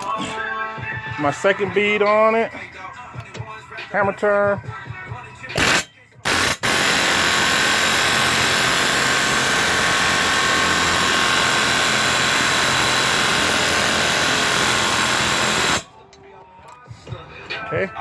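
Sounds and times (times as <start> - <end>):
pneumatic air hammer hammering: 5.5 - 15.9.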